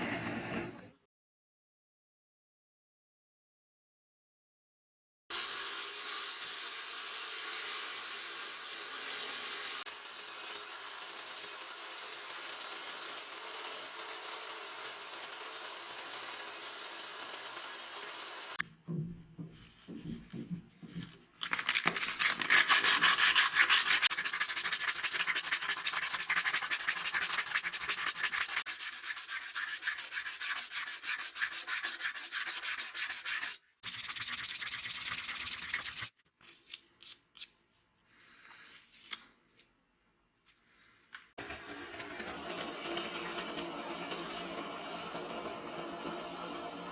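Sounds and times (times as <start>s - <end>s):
sanding strokes on a hatchet: 5.3s - 18.6s, 22.3s - 36.1s.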